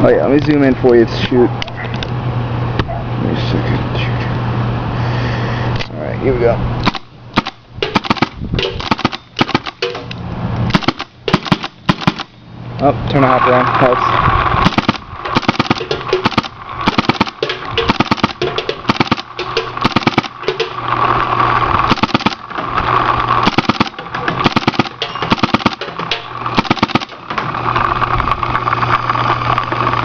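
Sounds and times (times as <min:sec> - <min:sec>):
paintball marker firing rapid shots: 0:06.8 - 0:10.0, 0:10.7 - 0:12.3, 0:14.6 - 0:20.8, 0:21.9 - 0:22.5, 0:23.4 - 0:27.3.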